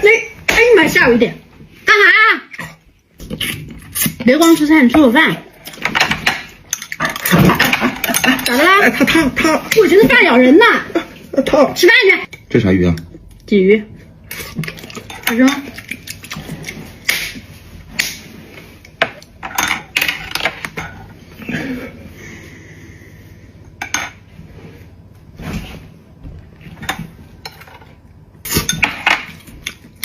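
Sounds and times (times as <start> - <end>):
utensils clinking on plates: 5.6 - 9.9, 19.0 - 21.0, 26.8 - 29.9.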